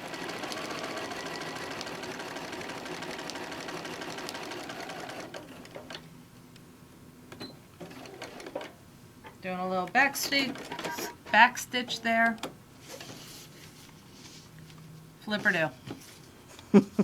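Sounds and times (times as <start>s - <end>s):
sewing machine stitching: 0.0s - 6.0s, 7.8s - 8.8s, 10.2s - 11.4s.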